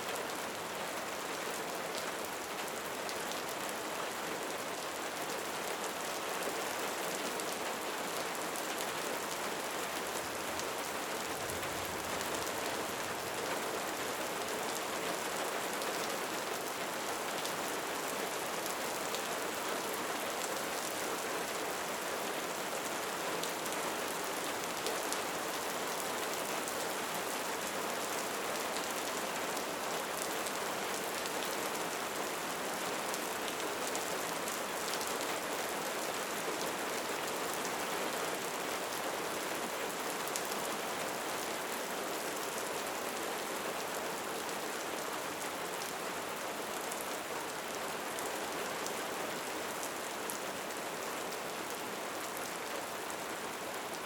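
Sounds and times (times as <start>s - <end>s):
rain pattering: 8.6s - 15.5s.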